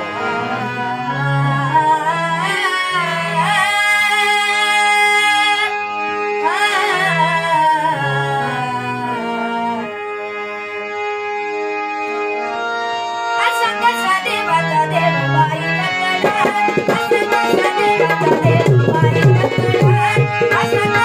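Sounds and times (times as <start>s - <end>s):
person singing devotional song: 0.0s - 10.1s, 13.4s - 21.0s
reed keyboard chords: 9.7s - 21.0s.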